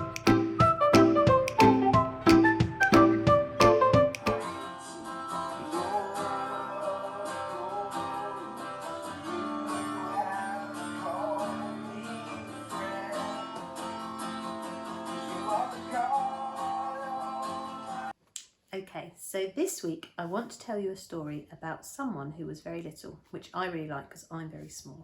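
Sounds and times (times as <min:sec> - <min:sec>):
strummed acoustic guitar music: 0:00.0 - 0:18.1.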